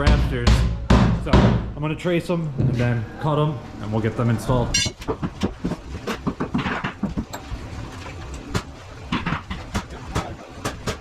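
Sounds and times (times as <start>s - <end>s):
sharp knocks and clicks of construction: 0.0s - 1.8s, 4.8s - 11.0s.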